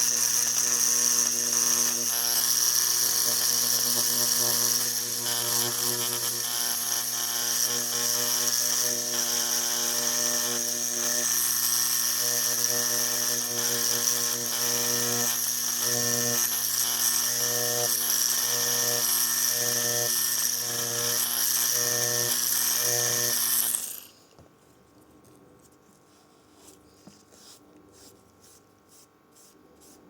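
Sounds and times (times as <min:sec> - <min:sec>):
tattoo machine buzzing: 0:00.0 - 0:24.2.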